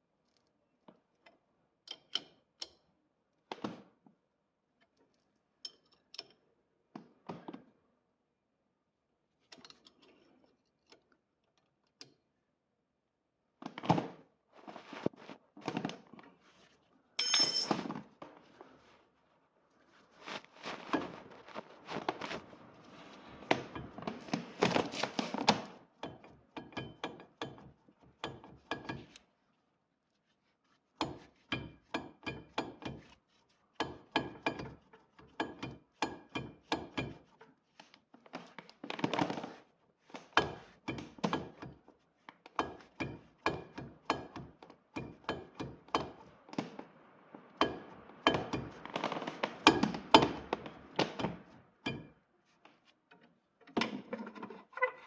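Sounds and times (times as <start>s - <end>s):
knocks and clunks with metallic ring: 17.2s - 17.9s, 26.0s - 29.1s, 42.6s - 46.3s, 47.6s - 52.2s.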